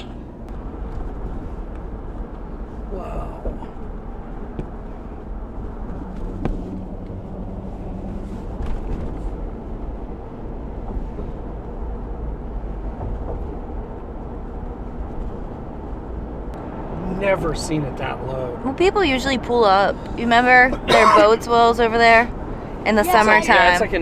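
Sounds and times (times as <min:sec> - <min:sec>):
car engine rumble: 0:00.0 - 0:24.0
tyres on road: 0:00.0 - 0:24.0.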